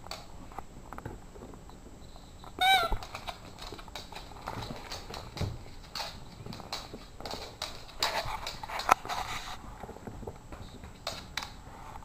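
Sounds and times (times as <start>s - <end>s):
clicks and scuffles of dogs playing: 0.0s - 1.7s, 2.9s - 12.0s
squeaky dog toy squeaking: 2.6s - 3.0s.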